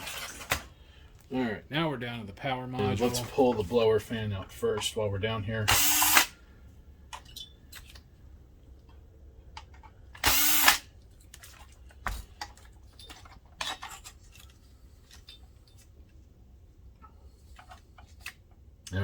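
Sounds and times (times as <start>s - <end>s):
electric screwdriver whine: 5.7s - 6.4s, 10.2s - 10.9s.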